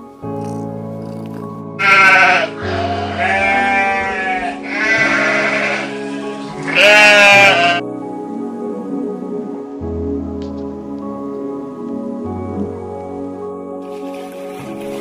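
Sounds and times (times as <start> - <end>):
background music: 0.0 - 15.0
animal bleat-like cries: 1.8 - 7.8.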